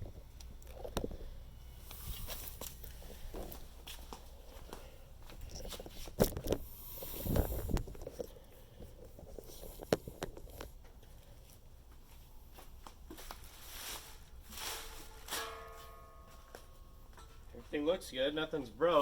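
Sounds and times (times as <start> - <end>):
cardboard packaging rustling: 13.1 - 15.9.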